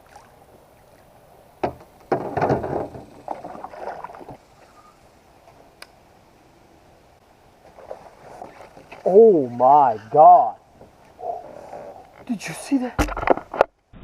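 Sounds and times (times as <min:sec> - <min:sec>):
water splashing around kayak: 0:00.0 - 0:05.0.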